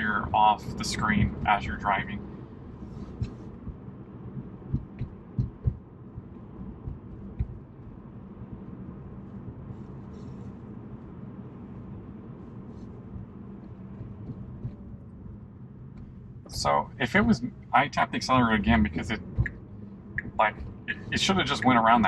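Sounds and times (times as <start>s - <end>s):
road and tyre rumble: 0.0s - 22.0s
sharp thumps: 4.6s - 8.1s.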